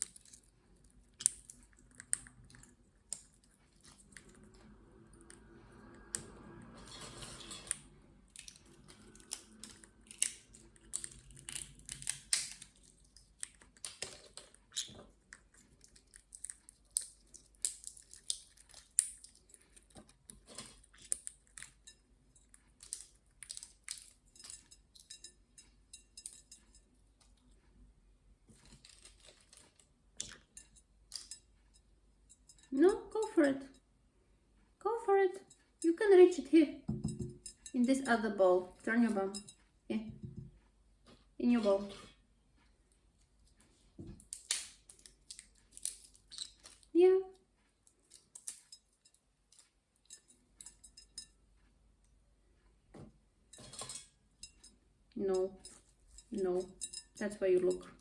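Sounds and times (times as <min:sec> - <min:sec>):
parrot cracking nut shell: 0:01.1 - 0:03.4, 0:08.4 - 0:21.7, 0:44.2 - 0:46.9.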